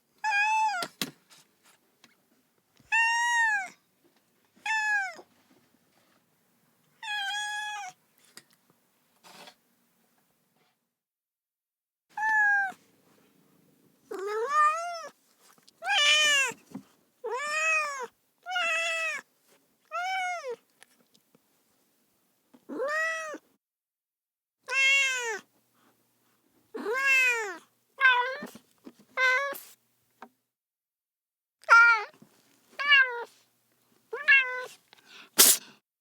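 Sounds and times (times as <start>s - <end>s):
cat meowing: 2.9s - 3.8s, 4.6s - 5.2s, 7.0s - 8.0s, 12.2s - 12.8s, 14.1s - 15.1s, 17.2s - 19.2s, 19.9s - 20.6s, 22.7s - 23.4s, 24.6s - 25.5s, 26.8s - 28.5s, 31.6s - 32.2s, 32.8s - 33.3s, 34.1s - 34.8s.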